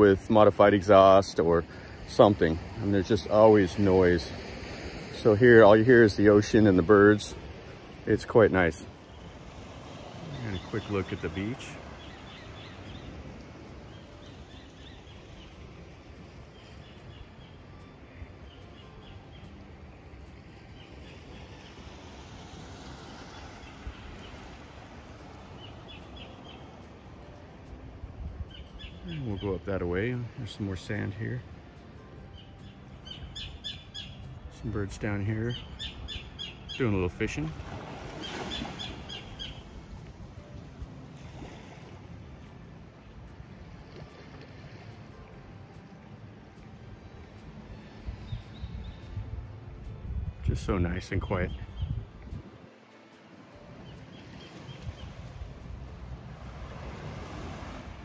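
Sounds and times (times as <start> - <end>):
gentle surf washing on beach: 0.0 - 32.2, 33.7 - 58.0
wind: 0.0 - 58.0
small birds chirping: 5.0 - 27.3, 28.2 - 40.0, 47.0 - 49.4, 50.1 - 52.5, 53.4 - 55.5
bird chirps: 10.1 - 15.6, 25.4 - 26.8, 28.5 - 29.7, 32.3 - 34.4, 35.4 - 37.2, 38.2 - 39.8, 51.4 - 52.0.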